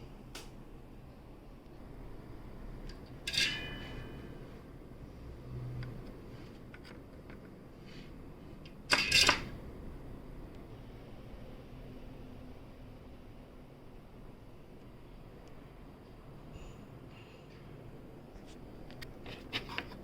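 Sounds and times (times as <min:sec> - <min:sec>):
metal parts rattling clatter: 0:03.3 - 0:04.0, 0:08.9 - 0:09.5.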